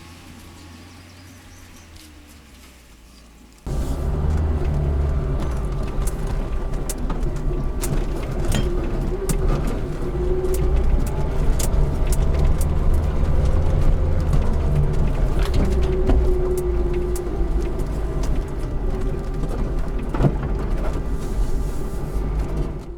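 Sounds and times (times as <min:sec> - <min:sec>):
car engine rumble: 0:00.0 - 0:22.9
knocks and rattles: 0:03.7 - 0:21.2.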